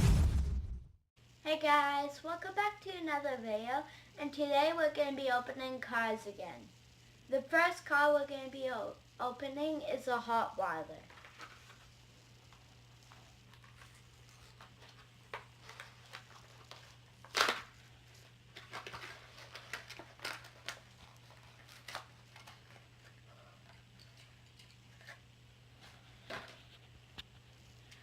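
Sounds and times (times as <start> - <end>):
plastic package crinkling and tearing: 13.4 - 25.2.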